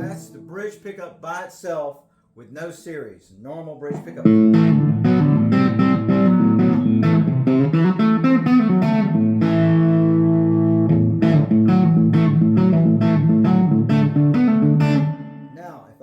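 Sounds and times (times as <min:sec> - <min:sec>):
distorted electric guitar: 0:00.0 - 0:00.8, 0:03.9 - 0:15.6.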